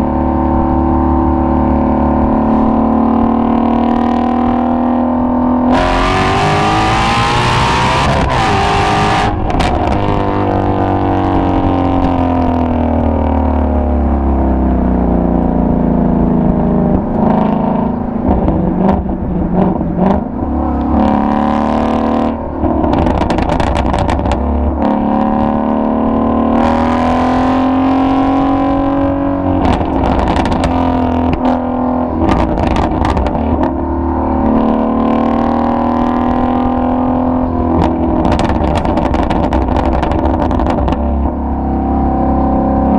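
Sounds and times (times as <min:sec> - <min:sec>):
car engine accelerating: 0:00.0 - 0:42.9
exhaust pops and crackles: 0:22.6 - 0:25.0, 0:29.5 - 0:33.8, 0:37.7 - 0:41.4.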